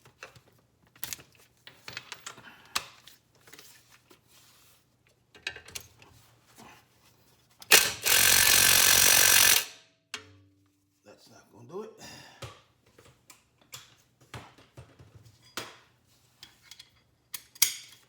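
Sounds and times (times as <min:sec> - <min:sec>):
impact wrench burst: 0:07.6 - 0:09.8.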